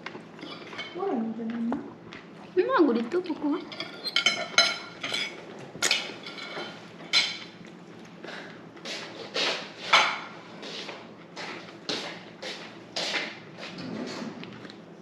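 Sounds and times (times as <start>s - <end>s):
utensil clinking against dish: 0.4s - 1.0s, 3.6s - 7.5s.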